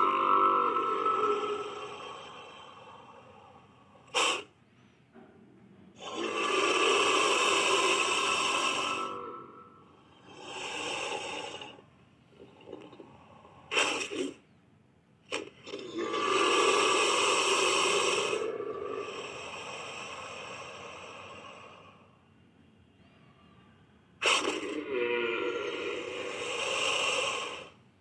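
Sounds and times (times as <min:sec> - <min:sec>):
creature rasping hiss: 0:00.0 - 0:04.5, 0:06.0 - 0:11.8, 0:13.6 - 0:14.4, 0:15.3 - 0:21.8, 0:24.2 - 0:27.8.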